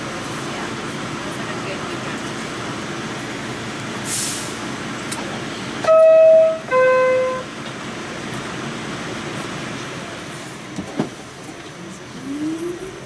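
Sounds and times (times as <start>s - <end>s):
subway car running noise: 0.0s - 13.0s
air hiss: 4.1s - 4.6s.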